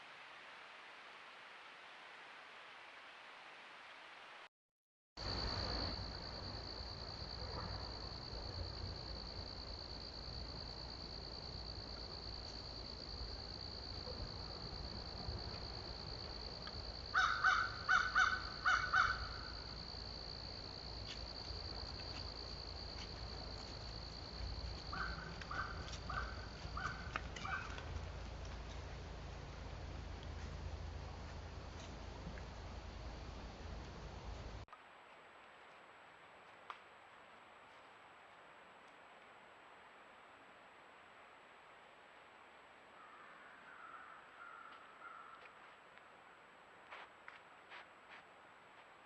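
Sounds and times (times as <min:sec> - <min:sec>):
crows cawing: 0:17.1 - 0:19.6, 0:24.9 - 0:27.9, 0:43.0 - 0:45.5.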